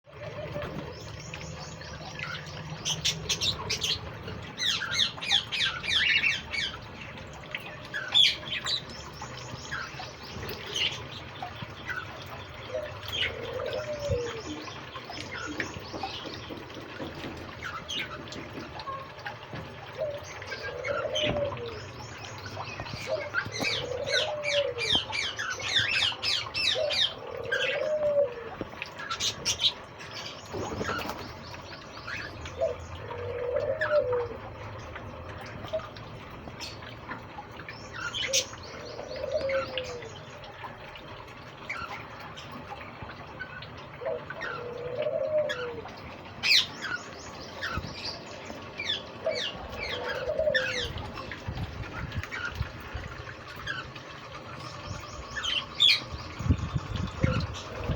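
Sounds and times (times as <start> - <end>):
birds chirping and twittering: 0.1 - 57.9
low cooing call: 12.7 - 15.0, 19.8 - 22.0, 23.1 - 25.3, 26.6 - 28.9, 32.5 - 34.8, 43.9 - 46.6, 48.6 - 51.5.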